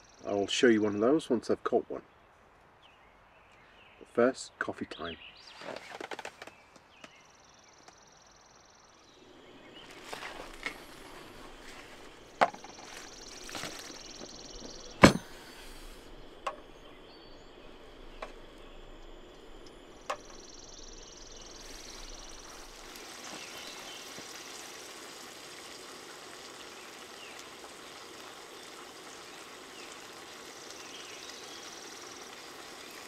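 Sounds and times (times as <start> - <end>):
steady low hiss: 6.8 - 33.0.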